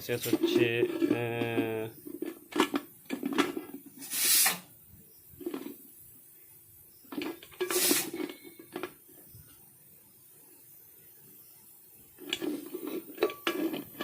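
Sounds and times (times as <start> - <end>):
scraping hisses: 3.8 - 4.7, 7.1 - 8.7.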